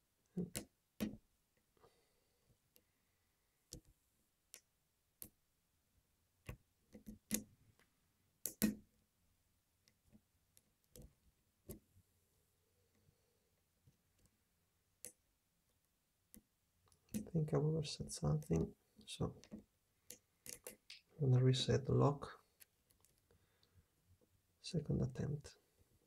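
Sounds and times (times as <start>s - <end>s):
lock picking clicks and taps: 8.4s - 8.8s, 19.4s - 21.0s.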